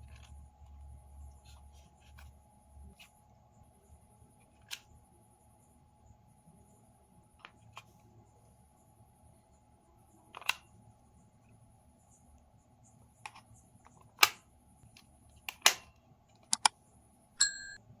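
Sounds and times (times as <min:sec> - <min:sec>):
short electronic beep: 0:17.4 - 0:17.8.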